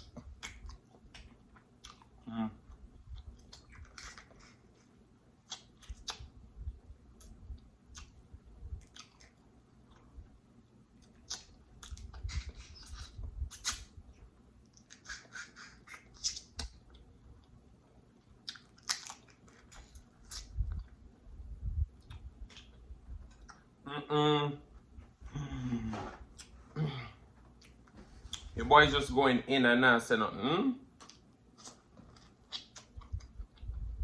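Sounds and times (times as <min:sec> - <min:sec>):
person chewing food: 0:00.0 - 0:06.4, 0:07.1 - 0:10.3, 0:10.9 - 0:14.0, 0:14.6 - 0:21.1, 0:21.9 - 0:23.7, 0:27.3 - 0:28.5, 0:31.0 - 0:34.0
wet mouth sounds: 0:00.0 - 0:06.4, 0:07.2 - 0:10.1, 0:11.0 - 0:14.0, 0:14.7 - 0:17.1, 0:18.4 - 0:21.0, 0:21.6 - 0:23.6, 0:31.0 - 0:34.0.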